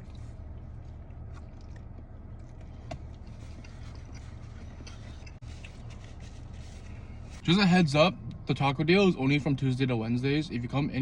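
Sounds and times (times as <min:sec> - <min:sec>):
person chewing and biting food: 0:00.0 - 0:07.2
low car hum: 0:00.0 - 0:11.0.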